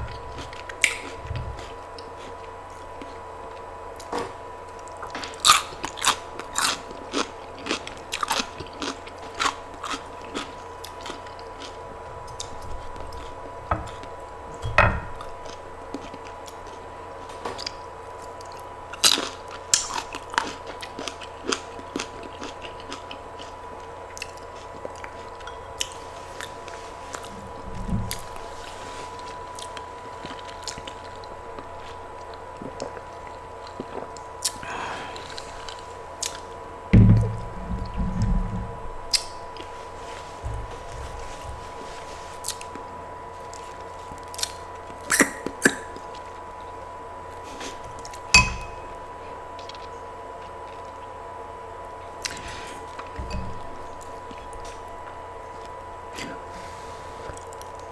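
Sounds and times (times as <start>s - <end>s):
crunchy chewing: 0.0s - 4.1s, 4.7s - 14.6s, 15.2s - 36.6s, 37.3s - 51.2s
dull low thumps: 36.9s - 39.2s.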